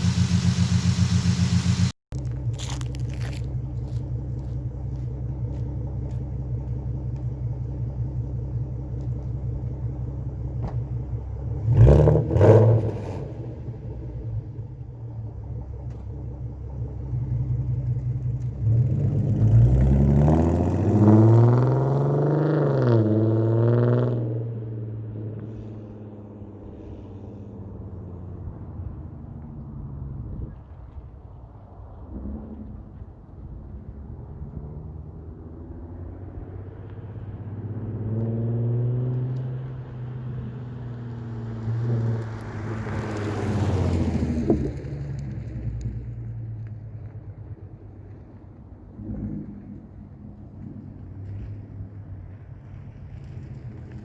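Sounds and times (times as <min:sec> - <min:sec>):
car engine revving: 0:00.0 - 0:14.6.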